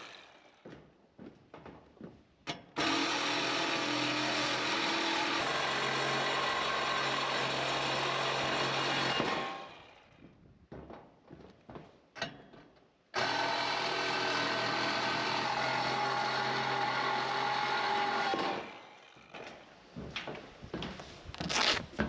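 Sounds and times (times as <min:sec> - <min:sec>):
cordless power tool running: 0:02.8 - 0:10.0, 0:13.2 - 0:19.6.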